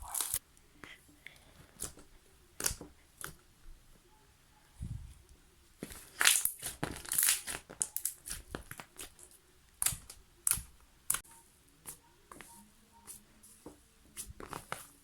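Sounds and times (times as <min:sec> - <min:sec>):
slime crackling and squelching: 0:00.0 - 0:00.4, 0:05.8 - 0:12.5.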